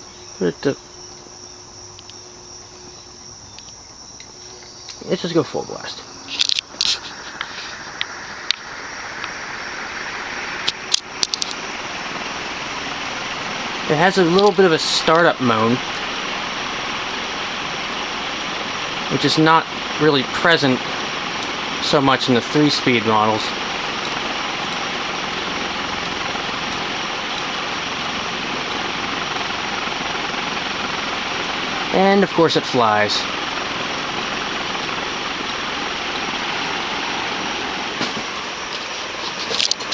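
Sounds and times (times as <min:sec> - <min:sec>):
ceiling fan air rush: 0:00.0 - 0:39.9
sharp clicks: 0:01.9 - 0:02.2, 0:06.2 - 0:37.2.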